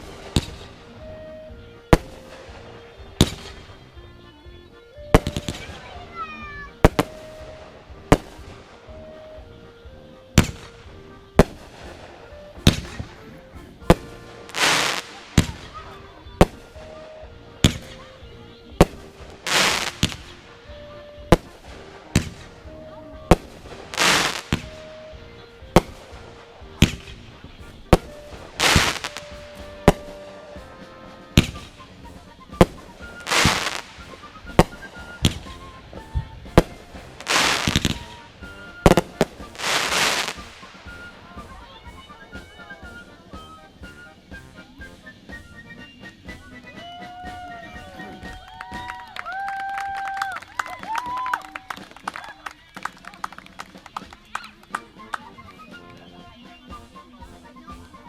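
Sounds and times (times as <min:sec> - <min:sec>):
crackling firework bursts: 0:00.0 - 0:03.8, 0:05.1 - 0:09.5, 0:10.4 - 0:54.6
firework bangs: 0:00.0 - 0:03.8, 0:05.1 - 0:06.2, 0:06.8 - 0:09.2, 0:10.4 - 0:18.0, 0:18.7 - 0:41.8.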